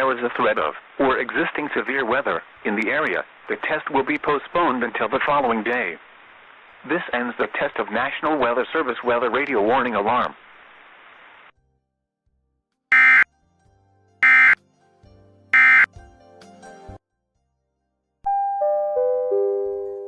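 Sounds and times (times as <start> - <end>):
radio hiss: 0.0 - 11.5, 12.9 - 13.2
descending electronic chime: 12.9 - 13.2
loud electronic beeps: 12.9 - 13.2, 14.2 - 14.6, 15.6 - 15.9.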